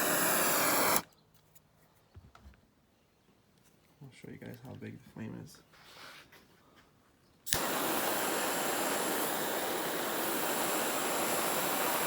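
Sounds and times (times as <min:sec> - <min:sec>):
torch jet flame hissing: 0:00.0 - 0:01.1, 0:07.5 - 0:12.0
lighter piezo click: 0:07.5 - 0:12.0.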